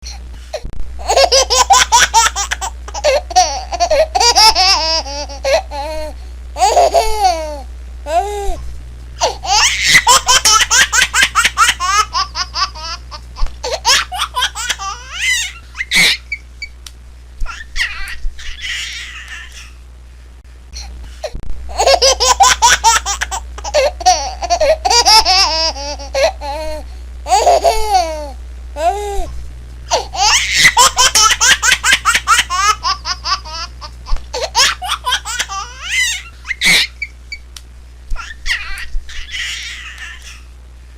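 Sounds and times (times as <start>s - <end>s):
low hum: 0.0s - 40.9s
high-pitched cartoon laughter: 9.4s - 13.1s, 13.7s - 16.4s, 21.7s - 26.2s, 30.2s - 33.7s, 34.5s - 37.2s.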